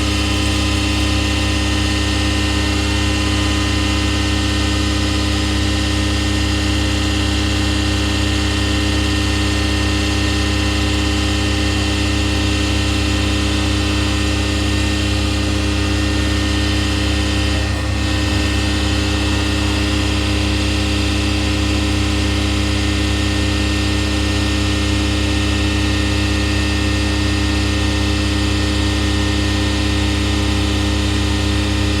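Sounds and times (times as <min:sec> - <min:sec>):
jet engines idling: 0:00.0 - 0:05.0, 0:09.2 - 0:23.2.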